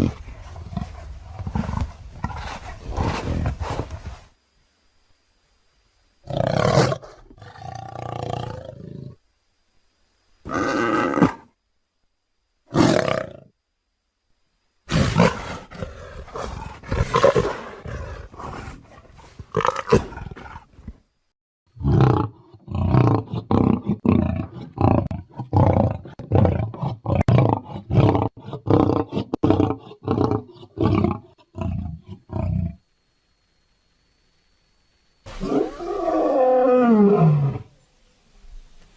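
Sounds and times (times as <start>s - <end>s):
big cat roaring and grunting: 14.9s - 20.7s, 21.8s - 32.8s, 35.3s - 37.7s.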